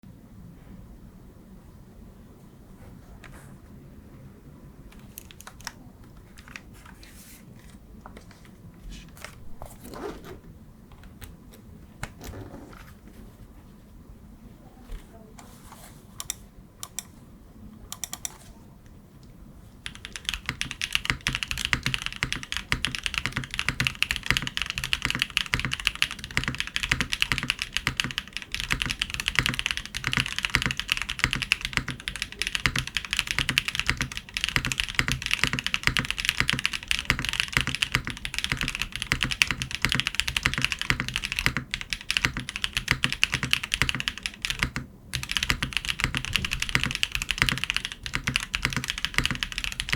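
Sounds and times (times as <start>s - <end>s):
mechanical keyboard typing: 4.9s - 7.0s, 16.2s - 17.2s, 17.9s - 18.5s, 19.8s - 49.9s.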